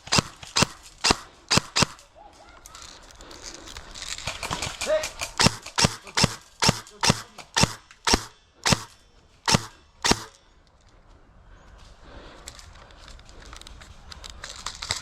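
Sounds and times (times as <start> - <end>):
airsoft gun shots: 0.0 - 2.1, 4.8 - 10.4.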